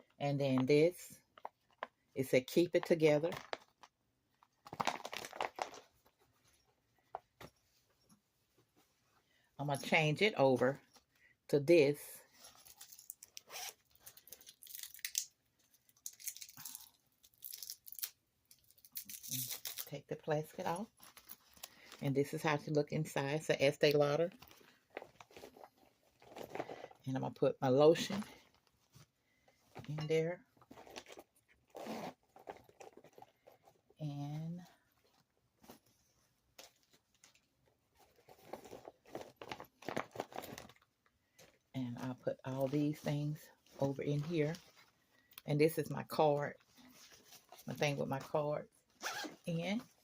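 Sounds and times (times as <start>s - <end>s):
items rustling and clicking in handbag: 0.0s - 11.2s, 12.2s - 50.0s
plastic wrapping crinkling: 3.4s - 5.9s.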